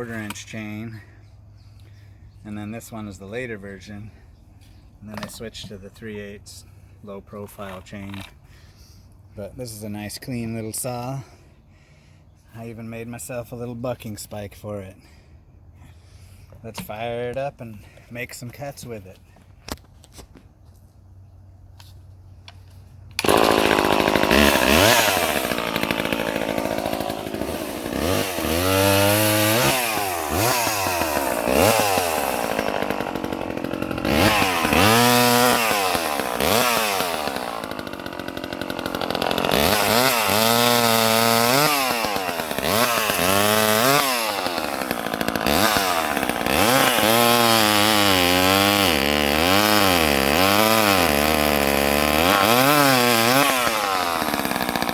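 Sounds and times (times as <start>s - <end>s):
chainsaw revving: 23.2s - 54.9s.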